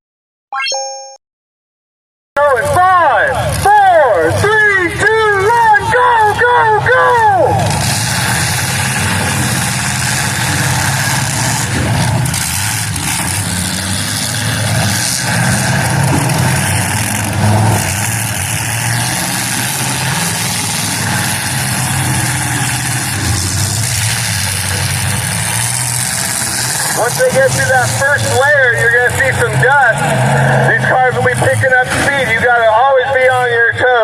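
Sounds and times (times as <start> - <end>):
car engines revving: 2.4 - 34.0
cars colliding: 7.6 - 30.6, 31.3 - 32.5.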